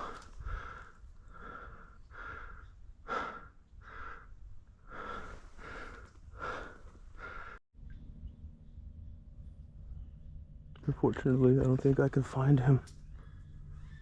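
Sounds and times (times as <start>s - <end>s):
man breathing hard and fast: 0.0s - 7.6s.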